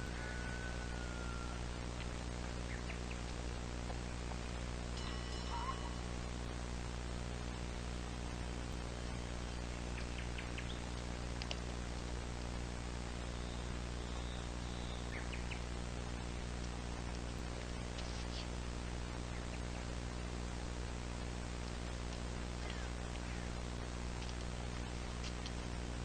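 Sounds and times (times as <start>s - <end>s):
faint high chirps: 0.0s - 1.8s, 5.0s - 6.6s
low electrical hum: 0.0s - 26.0s.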